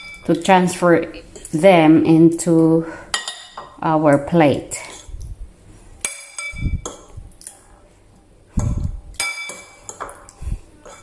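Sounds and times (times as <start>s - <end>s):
utensil clinking on plate: 6.0s - 7.6s, 9.2s - 11.0s.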